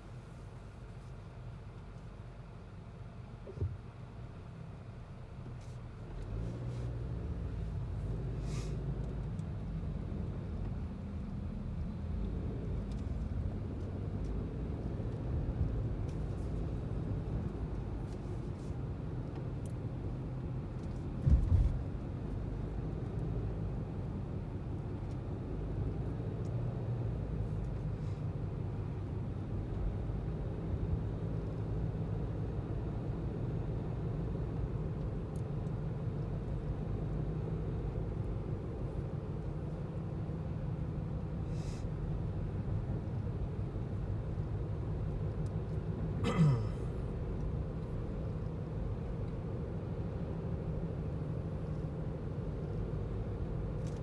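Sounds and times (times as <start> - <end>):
car road rumble: 0.0 - 54.0
brief thump: 21.2 - 21.9.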